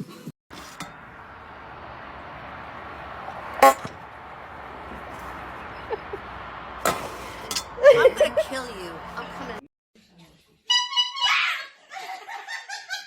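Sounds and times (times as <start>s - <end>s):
horn toot: 0.5s - 9.6s
steady background noise: 0.5s - 9.6s.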